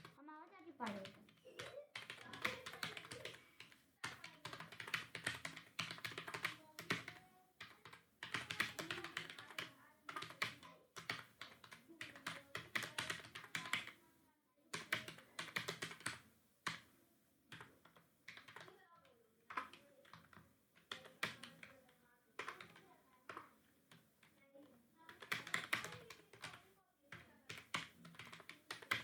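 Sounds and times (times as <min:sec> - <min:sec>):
computer keyboard typing: 0:00.8 - 0:14.0, 0:14.7 - 0:16.9, 0:17.5 - 0:29.0.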